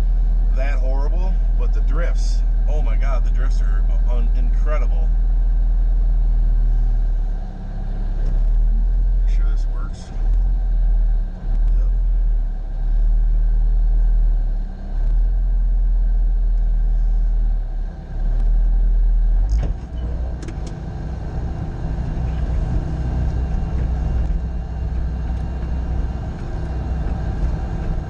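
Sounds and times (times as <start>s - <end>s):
diesel engine rumbling: 0.0s - 28.0s.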